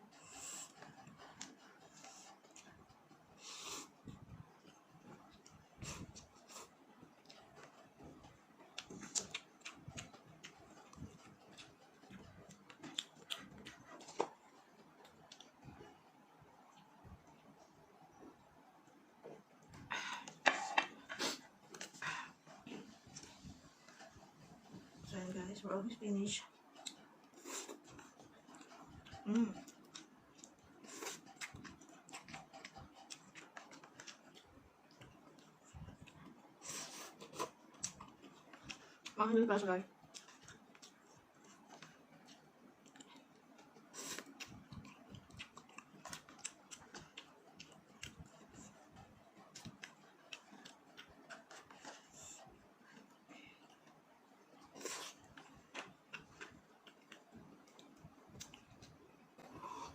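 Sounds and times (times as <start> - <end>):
chewing clicks and mouth smacks: 7.2 - 15.7, 27.7 - 36.4, 40.0 - 52.3, 52.9 - 59.6.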